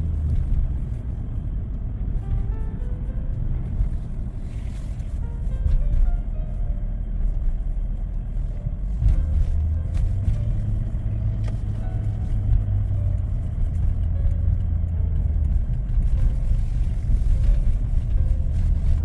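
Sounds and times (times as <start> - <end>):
car engine and tyres rumbling: 0.0 - 19.0.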